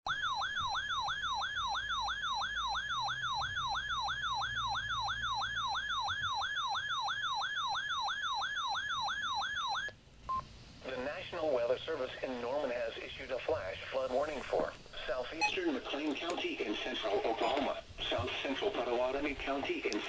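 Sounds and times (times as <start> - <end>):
warbling electronic alert tone: 0.1 - 9.9.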